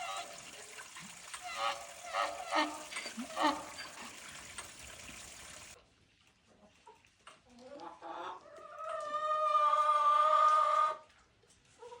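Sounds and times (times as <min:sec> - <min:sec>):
chicken clucking: 0:06.5 - 0:11.1.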